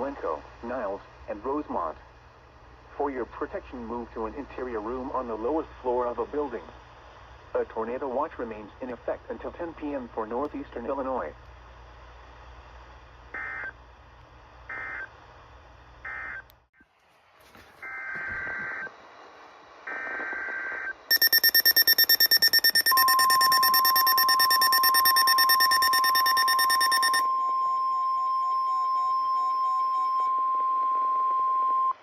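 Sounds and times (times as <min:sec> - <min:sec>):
screeching data bursts: 0:21.1 - 0:27.2
steady warning alarm tone: 0:21.1 - 0:30.2.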